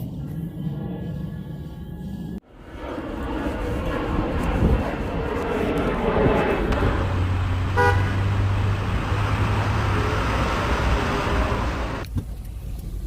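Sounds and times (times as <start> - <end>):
car engine and road rumble: 0.0 - 13.0
car horn toot: 7.8 - 8.3.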